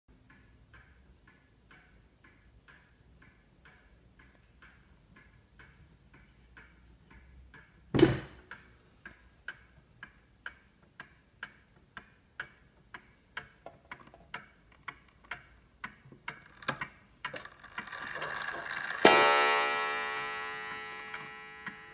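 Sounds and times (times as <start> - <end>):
clock ticking: 0.1 - 21.9.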